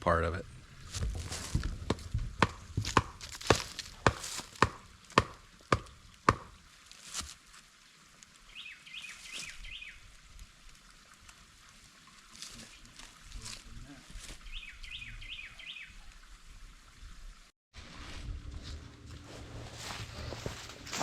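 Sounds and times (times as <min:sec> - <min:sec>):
chopping strikes on wood: 0:01.9 - 0:06.6.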